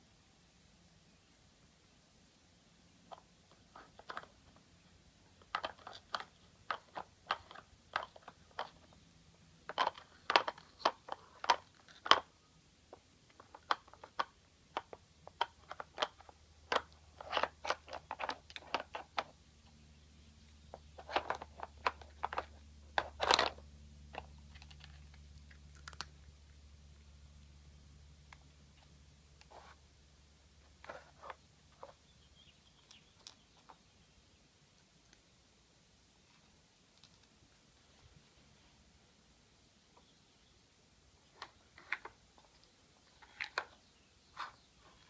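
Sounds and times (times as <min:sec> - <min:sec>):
plastic puzzle pieces clacking: 0:03.1 - 0:09.0, 0:09.6 - 0:19.4, 0:20.7 - 0:26.4, 0:30.8 - 0:32.0, 0:32.8 - 0:33.8, 0:36.9 - 0:37.4, 0:41.3 - 0:43.8
cat crunching dry treats: 0:05.4 - 0:09.0, 0:09.6 - 0:12.3, 0:13.3 - 0:19.3, 0:21.0 - 0:26.6.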